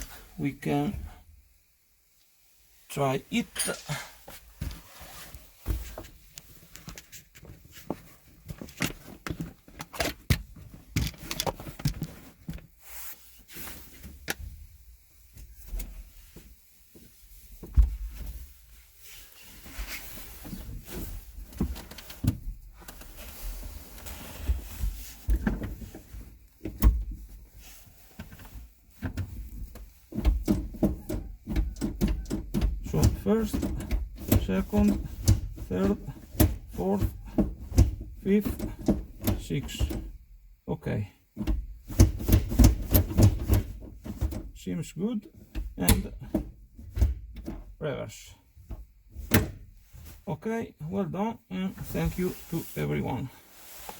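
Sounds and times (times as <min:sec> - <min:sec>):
hands handling car parts: 0:03.4 - 0:40.4, 0:41.2 - 0:44.6, 0:45.2 - 0:47.8, 0:51.7 - 0:53.9.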